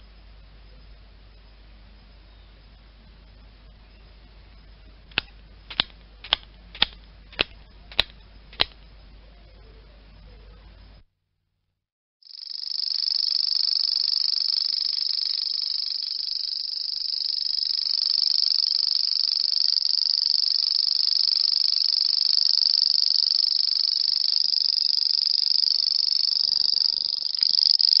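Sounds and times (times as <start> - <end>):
grasshopper buzzing trill: 12.2 - 28.0.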